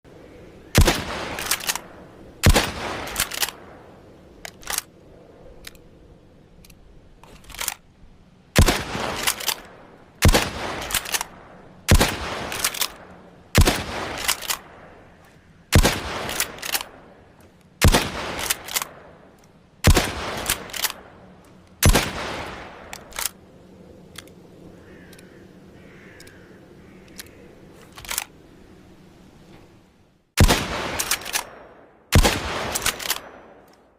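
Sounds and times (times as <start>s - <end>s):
rifle shots echoing: 0.7s - 4.9s, 8.6s - 23.4s, 30.4s - 33.9s.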